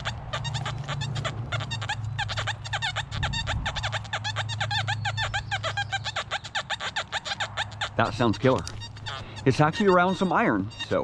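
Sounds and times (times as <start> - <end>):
metal detector warbling beeps: 8.0 - 11.0.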